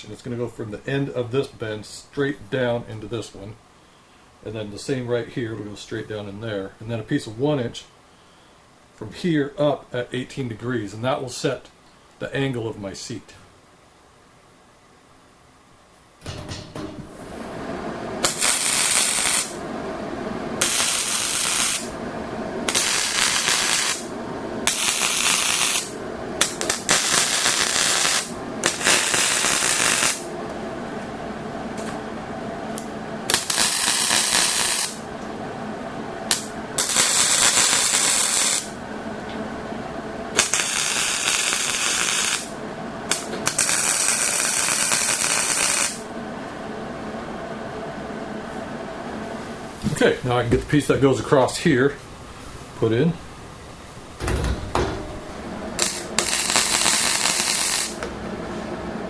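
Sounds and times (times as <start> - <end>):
background hum: 0.0 - 59.0
welding hiss: 18.2 - 19.7, 20.6 - 22.0, 22.6 - 30.3, 32.7 - 35.1, 36.3 - 38.8, 40.4 - 46.1, 55.7 - 58.0.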